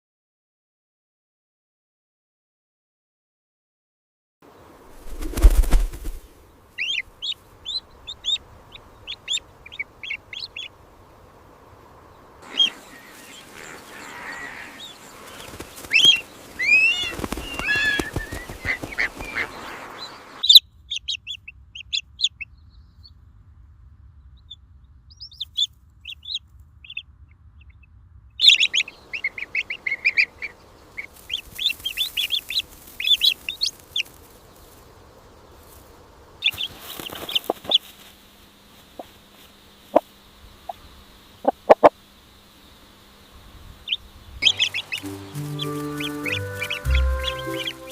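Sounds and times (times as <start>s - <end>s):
chicks peeping: 6.8s - 10.8s, 12.4s - 22.5s, 28.4s - 34.3s, 36.4s - 38.0s, 38.9s - 39.2s, 41.4s - 41.9s, 43.6s - 47.9s.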